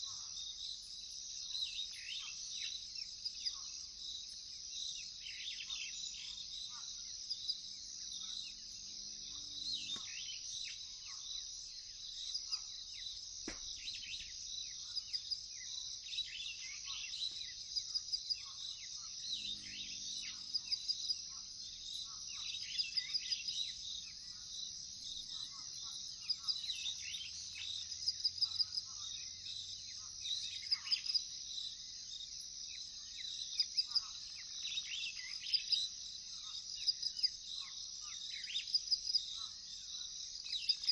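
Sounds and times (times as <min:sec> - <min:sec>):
crickets droning: 0:00.0 - 0:40.9
birds chirping and calling: 0:11.9 - 0:31.3, 0:33.0 - 0:39.7.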